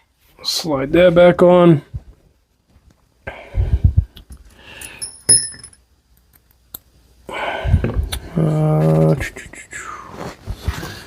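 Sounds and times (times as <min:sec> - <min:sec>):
small metal piece clinking: 0:04.8 - 0:05.8.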